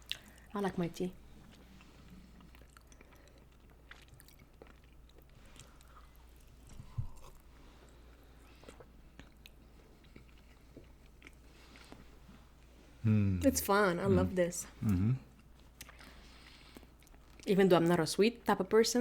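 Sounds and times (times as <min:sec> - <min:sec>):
chewing sticky sweets: 0:01.2 - 0:12.7, 0:14.8 - 0:18.5.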